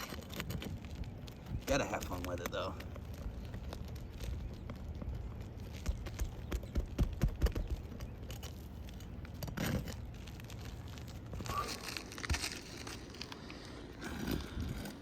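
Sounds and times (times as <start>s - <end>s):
shingles scraping and tearing: 0.0s - 15.0s
roof shingles knocking: 5.6s - 8.4s.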